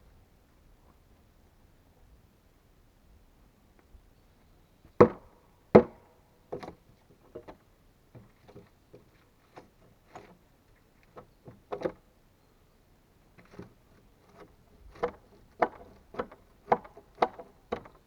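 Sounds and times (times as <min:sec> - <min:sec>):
light knocks and taps on wood: 0:14.4 - 0:18.0
sharp blows on wood: 0:14.9 - 0:18.0.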